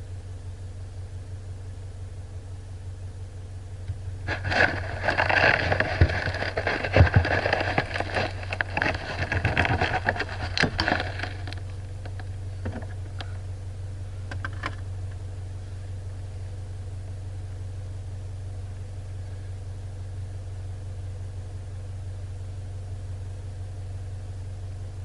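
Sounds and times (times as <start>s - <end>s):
vehicle engine running low: 0.0s - 25.0s
knocks and rattles over rough ground: 3.9s - 13.4s.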